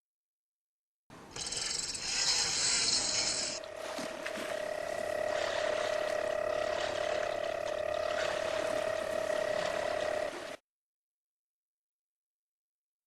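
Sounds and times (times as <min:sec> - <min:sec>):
machine hum: 0:01.2 - 0:10.6
rapid ratcheting clatter: 0:01.4 - 0:03.6.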